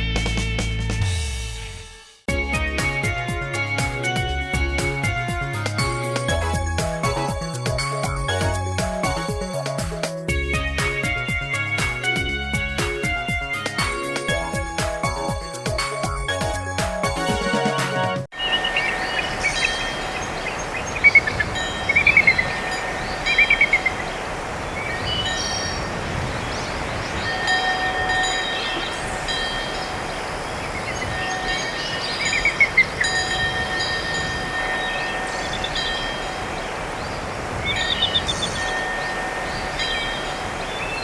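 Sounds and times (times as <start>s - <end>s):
high chirping: 18.3s - 41.0s.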